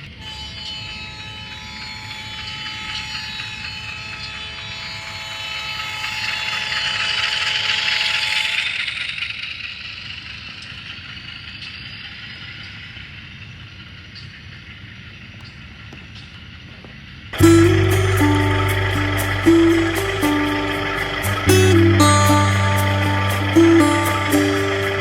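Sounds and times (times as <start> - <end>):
diesel locomotive rumble: 17.4 - 25.0
held chord of steady tones: 17.4 - 25.0.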